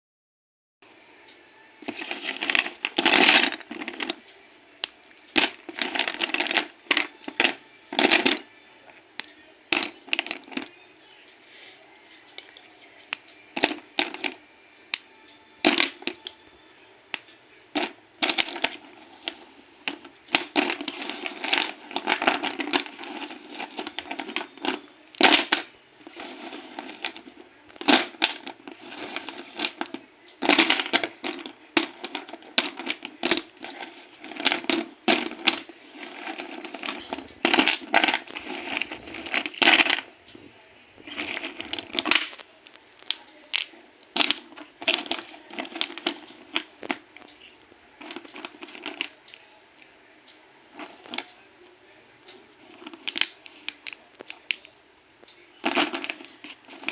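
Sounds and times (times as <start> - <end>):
dry clay crackling: 17.1 - 40.1, 52.6 - 56.9.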